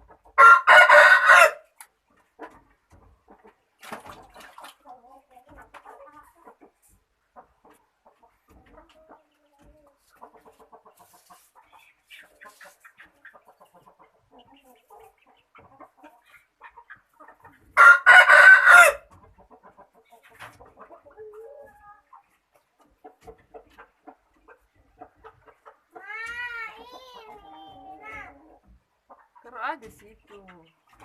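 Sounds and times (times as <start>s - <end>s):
chickens clucking softly: 0.0s - 31.0s
loud chicken call: 0.4s - 1.6s, 17.8s - 19.0s.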